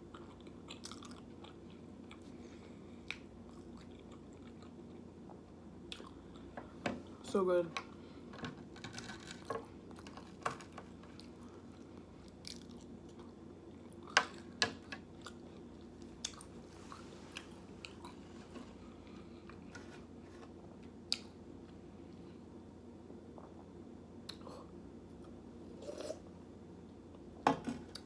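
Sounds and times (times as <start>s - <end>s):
faint low hum: 0.0s - 28.0s
chewing and biting food: 0.1s - 2.4s, 3.0s - 6.5s.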